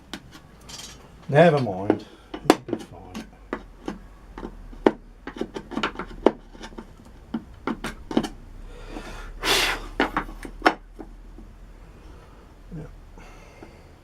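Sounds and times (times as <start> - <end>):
metal track scraping on wood: 0.0 - 11.1
tools knocking on wooden tabletop: 1.9 - 8.4.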